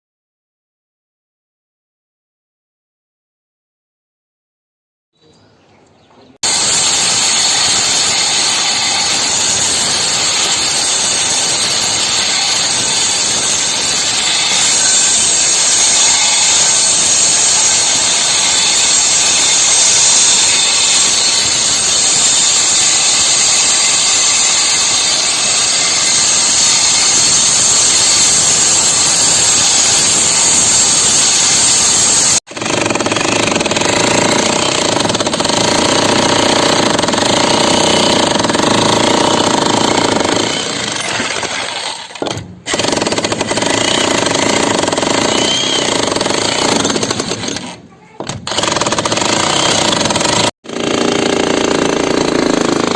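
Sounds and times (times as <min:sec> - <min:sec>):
power saw cutting concrete: 0:06.4 - 0:47.8, 0:48.4 - 0:52.9.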